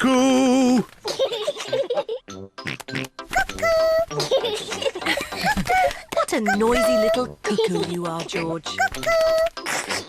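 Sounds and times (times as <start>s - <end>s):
light children's music: 0.6s - 10.0s
cartoon children giggling: 0.9s - 2.3s, 3.4s - 10.0s.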